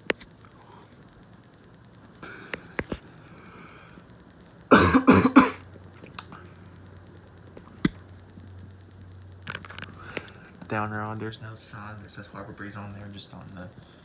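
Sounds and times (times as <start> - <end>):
ceiling fan humming: 0.0 - 14.0
person coughing: 4.7 - 5.6.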